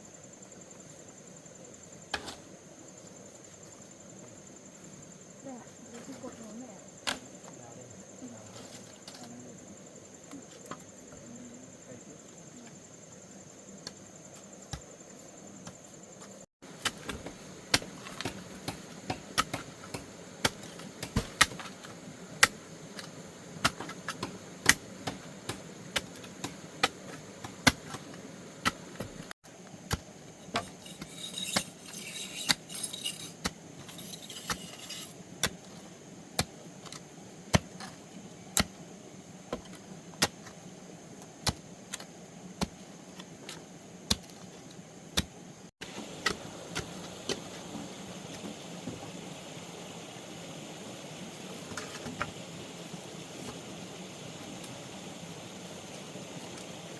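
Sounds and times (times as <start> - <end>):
faint insect drone: 0.0 - 56.9
metal digging tool striking ground: 16.8 - 21.8, 29.9 - 35.7
scraping: 30.4 - 35.8.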